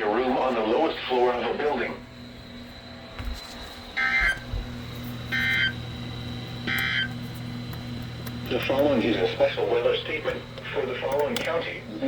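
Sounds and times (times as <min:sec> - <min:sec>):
low steady hum: 0:00.0 - 0:12.0
buzzy digital squawks: 0:04.0 - 0:04.4, 0:05.3 - 0:05.8, 0:06.7 - 0:07.2.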